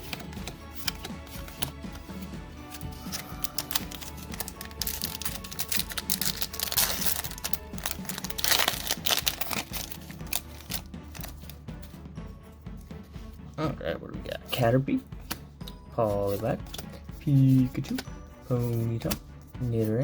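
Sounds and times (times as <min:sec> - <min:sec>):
background music: 0:00.0 - 0:20.0
clicky handling noises: 0:02.7 - 0:11.6
foil wrapper crinkling and tearing: 0:02.8 - 0:11.5.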